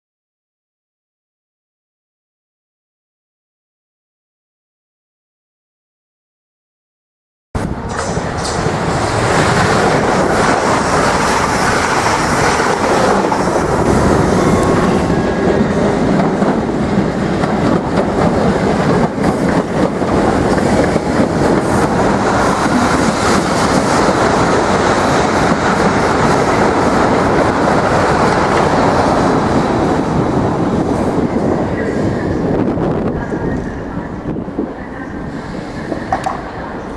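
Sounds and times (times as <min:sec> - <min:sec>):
train wheels on rails: 0:07.6 - 0:36.9.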